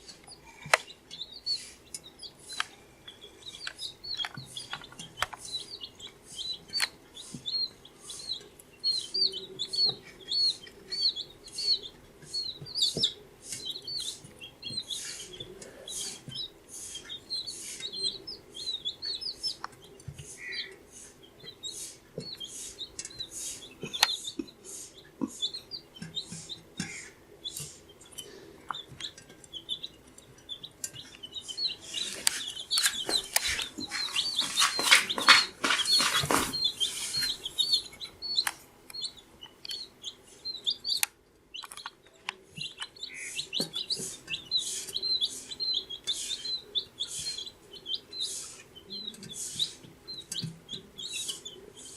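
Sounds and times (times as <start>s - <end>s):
baby chicks peeping: 0.0s - 51.9s
scratchy clicks and rustling: 31.9s - 38.6s.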